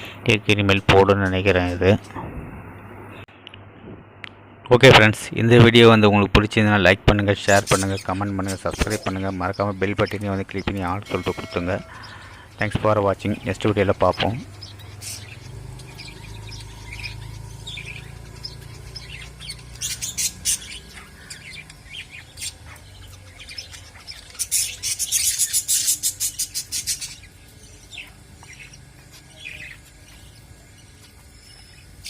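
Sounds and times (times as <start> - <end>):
cage birds chirping: 0.0 - 3.2, 5.4 - 32.0
low steady hum: 0.0 - 32.0
rapid high bird chattering: 7.4 - 32.0.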